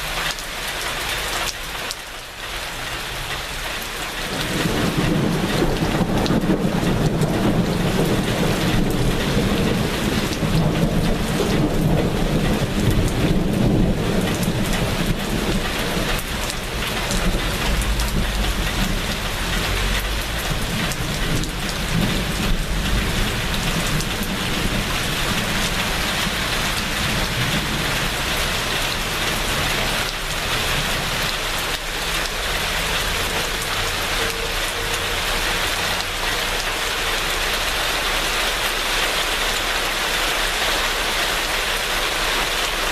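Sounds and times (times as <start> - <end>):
steady rain falling: 0.0 - 42.9
thunder rumbling: 4.3 - 35.2.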